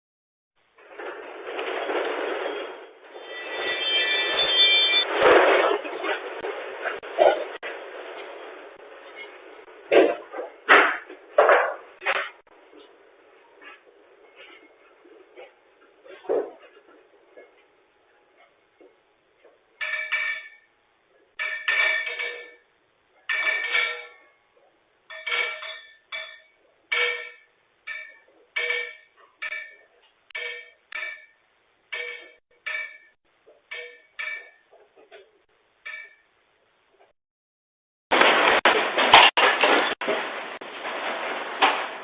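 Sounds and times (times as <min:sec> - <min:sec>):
chime-like tones: 0:03.1 - 0:05.1.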